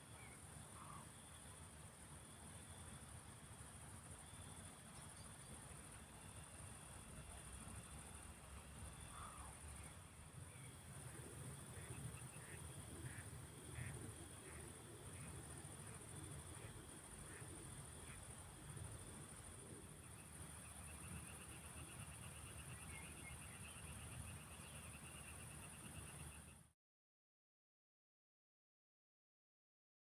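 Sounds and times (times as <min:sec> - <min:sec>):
faint quack-like animal calls: 0:00.2 - 0:01.1, 0:09.0 - 0:18.4
high insect hiss: 0:08.8 - 0:26.5.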